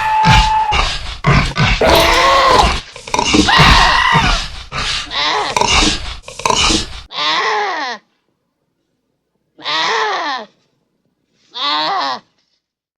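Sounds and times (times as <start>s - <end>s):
creature roars and growls: 1.4s - 4.4s
creature calls falling in pitch: 1.8s - 2.8s.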